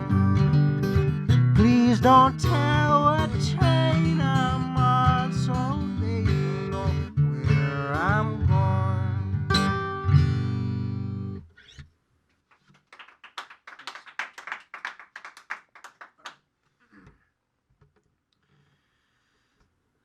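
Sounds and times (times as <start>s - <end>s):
acoustic guitar playing: 0.0s - 11.8s
faint scattered clapping: 12.3s - 16.8s.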